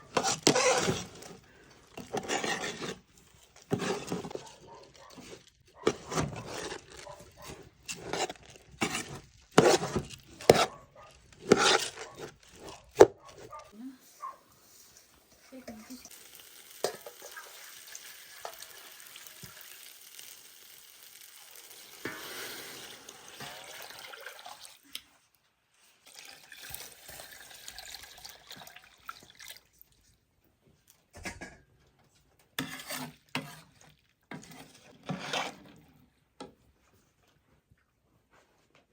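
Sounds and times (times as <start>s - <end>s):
utensil knocking and scraping pot: 0.0s - 13.7s, 16.8s - 17.6s, 22.0s - 23.9s, 32.5s - 35.8s.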